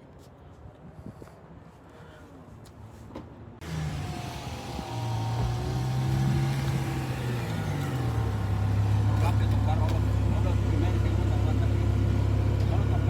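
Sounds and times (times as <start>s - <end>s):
car engine accelerating: 3.6s - 13.0s.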